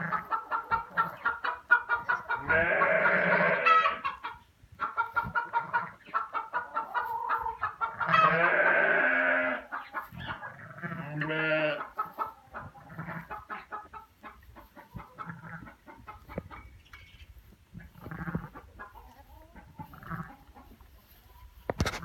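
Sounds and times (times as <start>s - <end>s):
loud chicken calls: 0.0s - 16.7s
chickens clucking: 0.0s - 22.0s.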